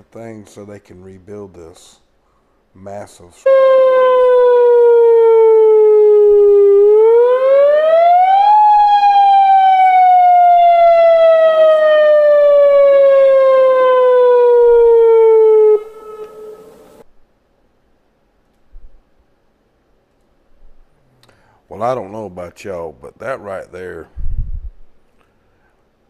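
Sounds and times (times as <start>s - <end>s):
warning siren wailing: 3.4s - 17.0s.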